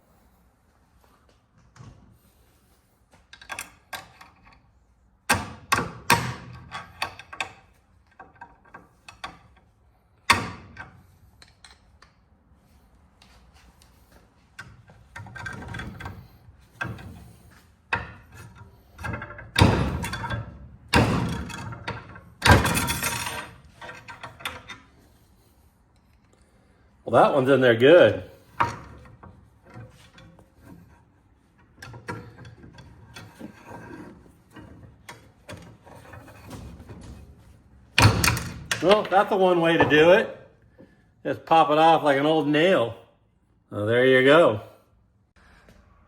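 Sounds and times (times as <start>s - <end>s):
metal knocks and clanks in vise: 5.3s - 12.2s, 14.6s - 24.9s, 28.4s - 39.1s.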